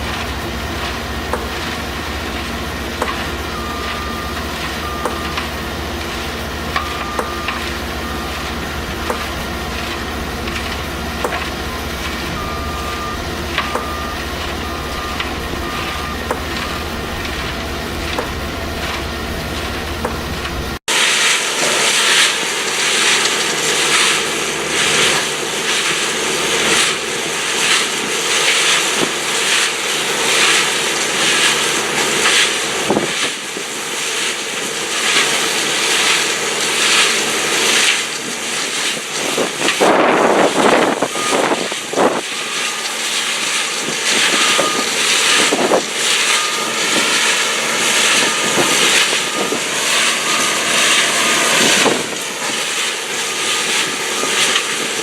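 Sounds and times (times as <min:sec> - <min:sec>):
screening machine din: 0:00.0 - 0:20.8, 0:39.8 - 0:55.0
short high beeps: 0:11.6 - 0:18.6.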